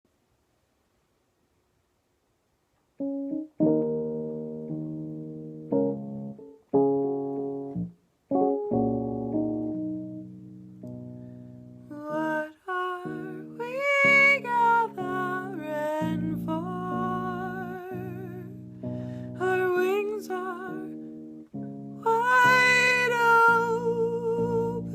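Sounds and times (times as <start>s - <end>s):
piano chords ringing: 3.0s - 11.8s
woman's wordless singing: 11.9s - 18.6s, 19.4s - 21.0s, 22.0s - 24.9s.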